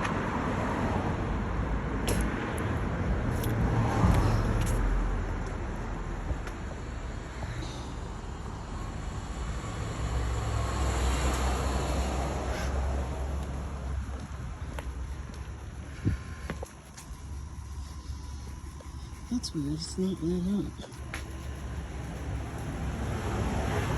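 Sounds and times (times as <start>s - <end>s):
vehicles passing with low rumble: 0.0s - 23.9s.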